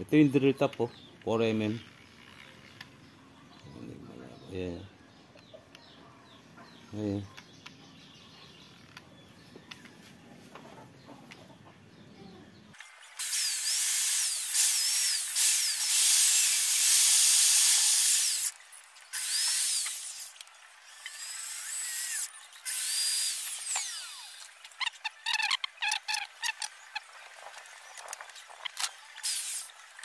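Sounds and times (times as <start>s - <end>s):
power drill motor whining: 12.8s - 18.6s, 19.2s - 24.6s.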